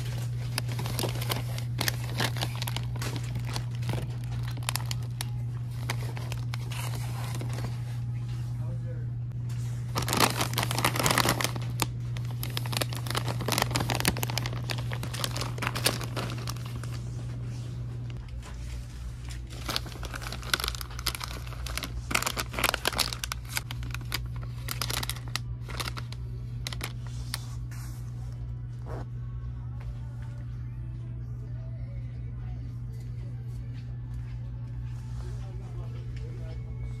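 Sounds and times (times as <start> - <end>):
plastic packaging crinkling: 0.0 - 8.0, 9.8 - 27.5
steady low hum: 0.0 - 37.0.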